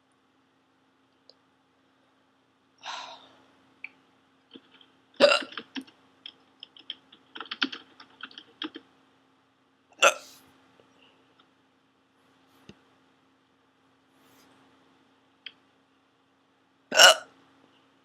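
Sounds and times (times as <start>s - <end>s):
woman hiccuping: 10.0s - 10.2s, 16.9s - 17.3s.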